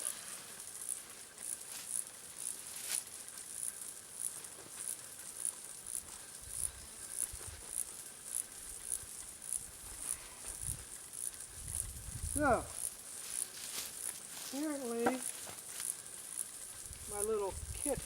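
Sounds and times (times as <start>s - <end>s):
insect chirping: 0.0s - 18.0s.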